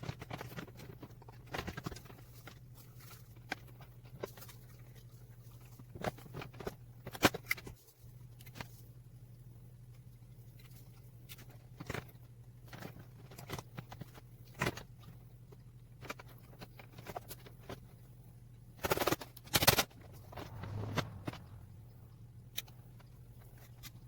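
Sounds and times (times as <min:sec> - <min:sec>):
steady low hum: 0:19.7 - 0:24.0
noisy bursts: 0:19.8 - 0:23.0.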